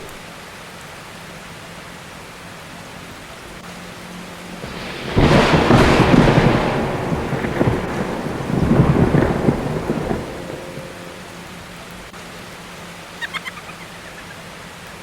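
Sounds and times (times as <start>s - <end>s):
steady rain: 0.0s - 15.0s
thunder crack and rumble: 3.5s - 12.1s.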